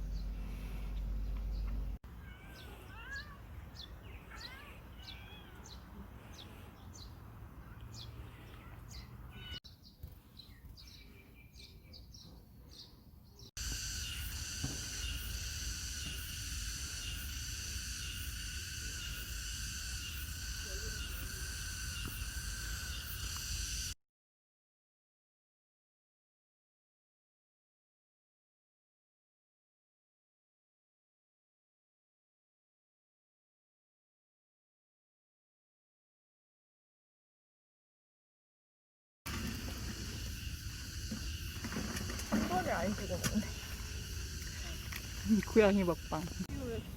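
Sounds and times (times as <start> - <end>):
high-pitched pulsing drone: 13.6 - 24.0.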